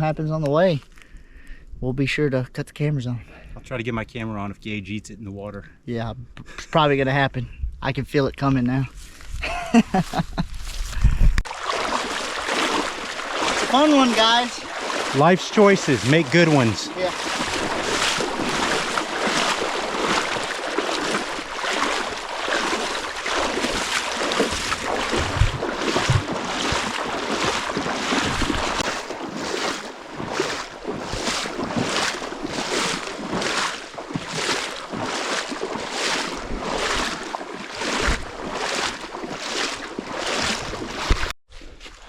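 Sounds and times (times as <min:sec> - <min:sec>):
footsteps sloshing through water: 0:09.0 - 0:42.0.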